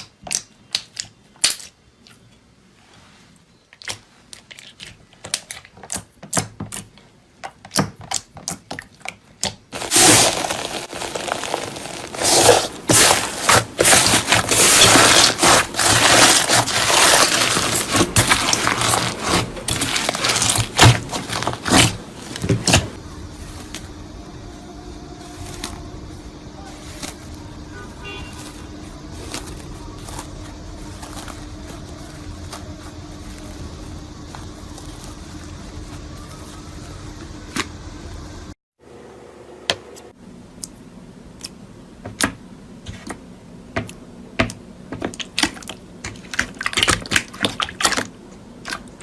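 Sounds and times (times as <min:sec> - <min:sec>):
slime crunching and crackling: 0:07.6 - 0:23.0.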